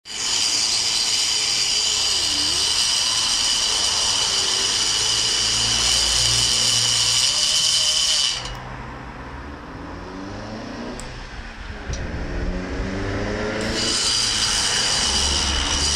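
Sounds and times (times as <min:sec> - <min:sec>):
die grinder whining: 0:00.0 - 0:08.6, 0:13.6 - 0:15.9.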